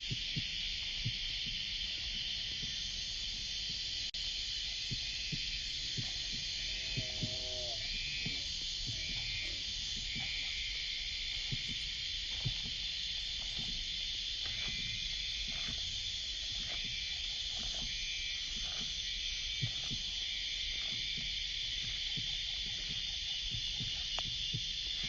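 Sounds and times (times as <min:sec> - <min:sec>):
cicadas droning: 0:00.0 - 0:25.0
pulsing insect call: 0:00.0 - 0:25.0
faint low knocks: 0:04.9 - 0:15.9.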